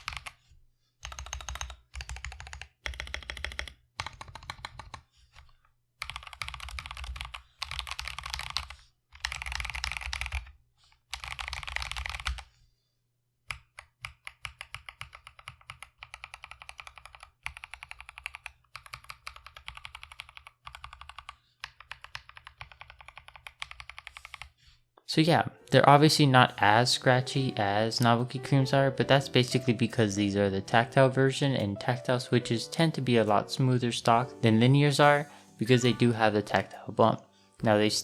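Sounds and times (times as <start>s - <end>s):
typing on mechanical keyboard: 0.0s - 0.4s, 1.0s - 10.5s, 11.1s - 12.5s, 13.5s - 24.6s.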